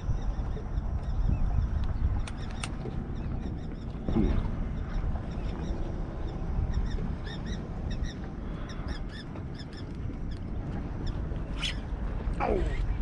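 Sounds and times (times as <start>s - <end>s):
low rumble of wind: 0.0s - 13.0s
water: 0.0s - 13.0s
bird chirping: 11.5s - 11.8s.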